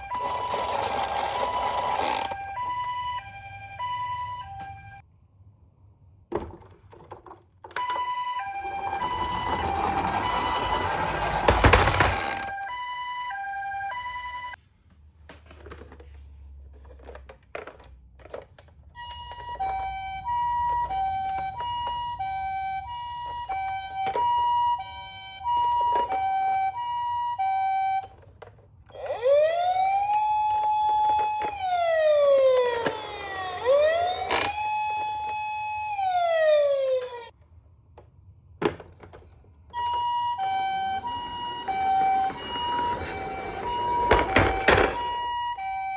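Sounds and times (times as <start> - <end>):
toy electronic siren: 0.0 - 5.0, 7.8 - 14.6, 19.0 - 28.3, 28.9 - 37.3, 39.8 - 45.9.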